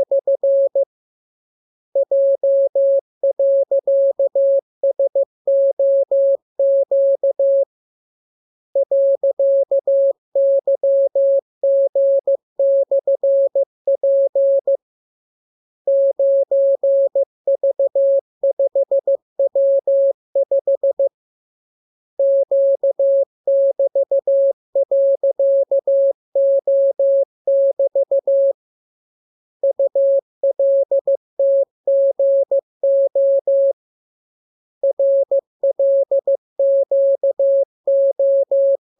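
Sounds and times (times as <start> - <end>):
morse code beeps: 34.8 - 38.8.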